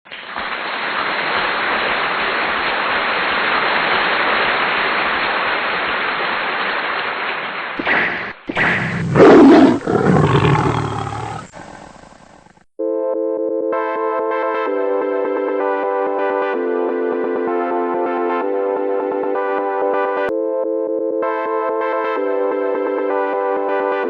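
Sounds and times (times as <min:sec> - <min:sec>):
big cat roaring: 0:08.5 - 0:12.4.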